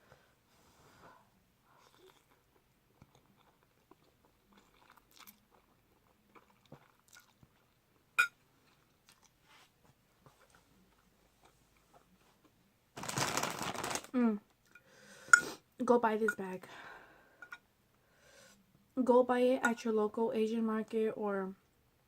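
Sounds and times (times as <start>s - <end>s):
chewing noodles: 1.7s - 7.8s, 8.6s - 9.4s.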